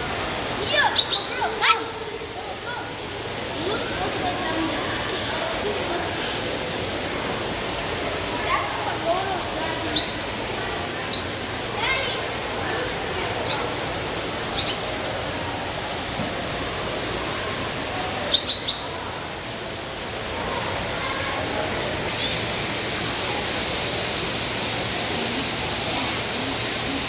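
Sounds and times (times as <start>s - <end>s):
faint murmur of people: 0.0s - 27.0s
rush like running water: 0.0s - 27.0s
short high bird chirps: 18.3s - 18.9s.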